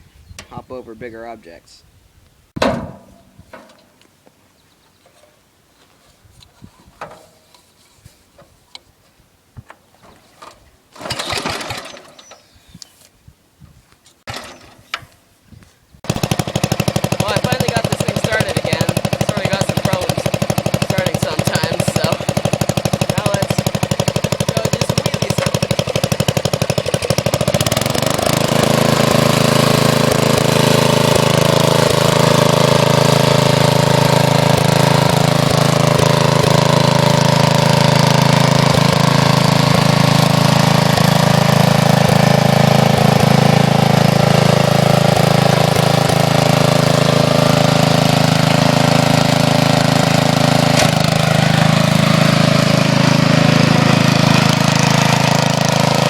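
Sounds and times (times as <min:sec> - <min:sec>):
lawn tractor engine: 0:09.7 - 0:12.5, 0:14.3 - 0:15.2, 0:16.0 - 0:56.0.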